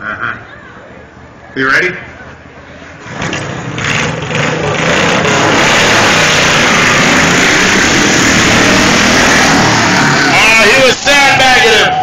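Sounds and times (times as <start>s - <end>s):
racing lawn mower engines: 2.7s - 12.0s.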